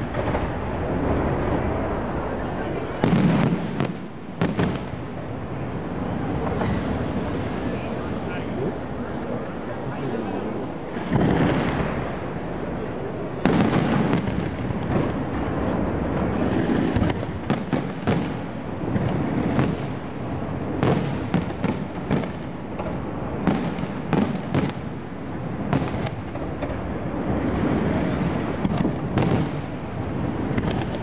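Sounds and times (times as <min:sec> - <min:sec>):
loud firework boom: 0:00.0 - 0:02.2, 0:02.8 - 0:05.0, 0:10.9 - 0:12.3, 0:27.7 - 0:29.7
sharp firework cracks and bangs: 0:00.0 - 0:08.4, 0:10.9 - 0:12.5, 0:13.3 - 0:31.0
fireworks bursts rumbling: 0:00.0 - 0:31.0.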